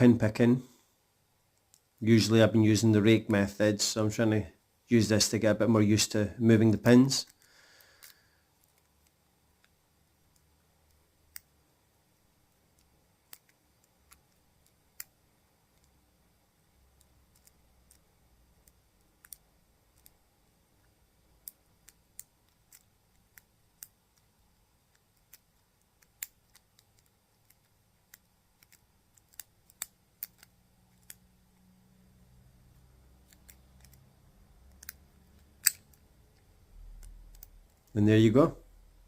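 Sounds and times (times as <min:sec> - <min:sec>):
metallic clicks of lock pick: 0:24.9 - 0:31.2, 0:34.7 - 0:36.0.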